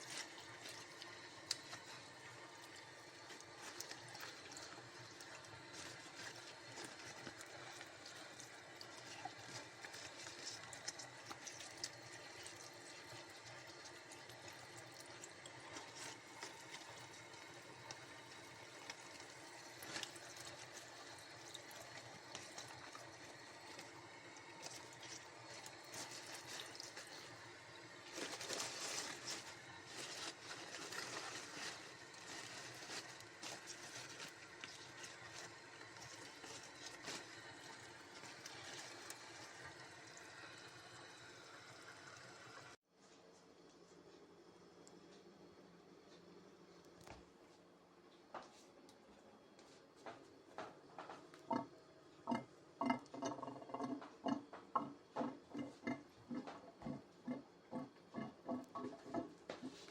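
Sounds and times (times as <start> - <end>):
water trickling and splashing: 0.0 - 42.8.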